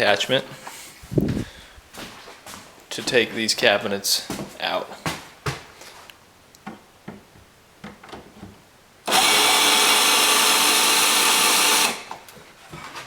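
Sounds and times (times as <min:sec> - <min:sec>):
power drill motor running: 0:09.1 - 0:12.1.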